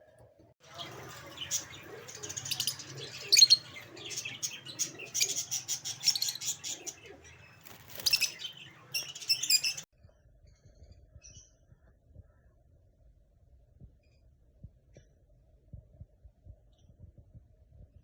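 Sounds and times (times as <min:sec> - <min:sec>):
parrots chirping and chattering: 0:00.6 - 0:09.9.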